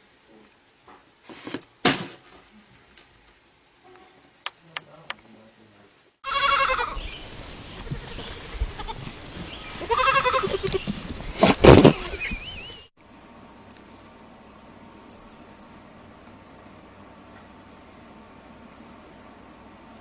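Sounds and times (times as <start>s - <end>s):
animal bleating call: 6.2s - 7.0s, 7.8s - 9.0s, 9.8s - 10.8s.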